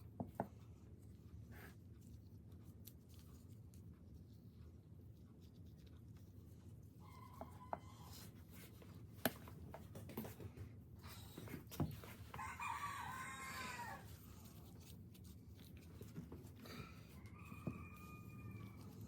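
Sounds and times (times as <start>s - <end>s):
rooster crowing: 12.4s - 14.1s, 17.1s - 19.0s.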